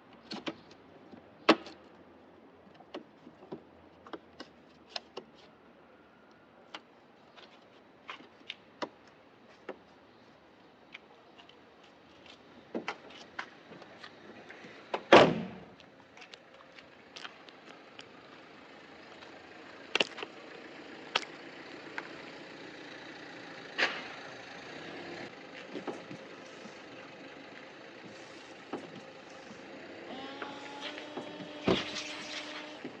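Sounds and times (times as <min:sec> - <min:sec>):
multi-tone hum: 0:25.1 - 0:33.0.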